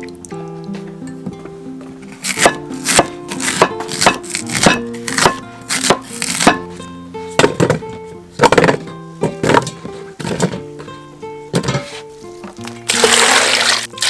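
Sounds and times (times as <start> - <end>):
background music: 0.0 - 14.0
knife chopping on cutting board: 2.2 - 6.8.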